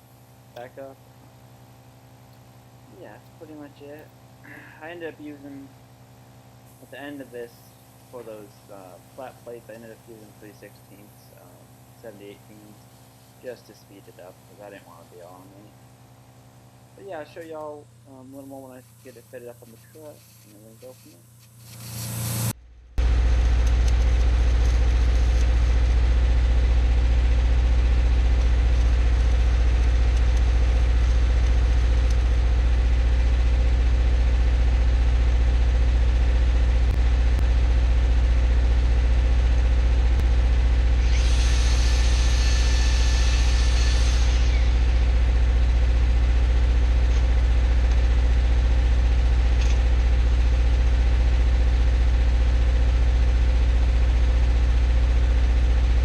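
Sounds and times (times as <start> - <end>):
engine idling: 0.0 - 20.2, 22.9 - 56.0
high hiss: 2.9 - 5.7, 6.6 - 15.8, 16.9 - 22.5, 41.0 - 45.6.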